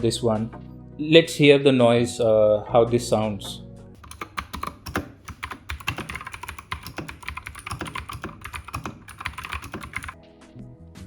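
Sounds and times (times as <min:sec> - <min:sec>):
mechanical keyboard typing: 0:04.0 - 0:10.2.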